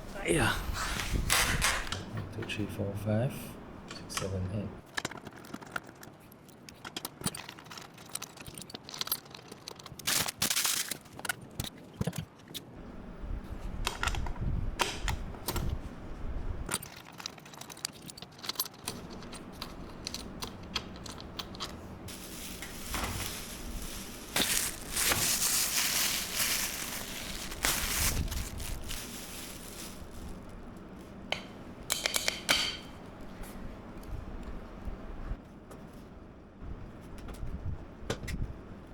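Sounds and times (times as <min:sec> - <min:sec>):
rustling and scraping: 0:16.7 - 0:31.2.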